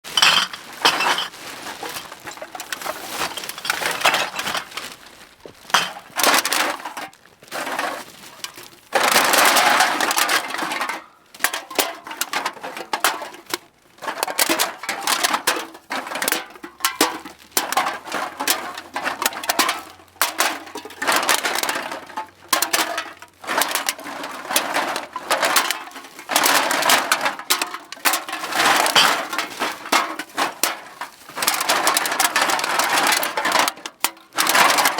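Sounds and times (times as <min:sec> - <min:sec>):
cans clinking and clattering: 0:00.0 - 0:05.0, 0:05.7 - 0:34.9
bag rustling: 0:00.0 - 0:09.2.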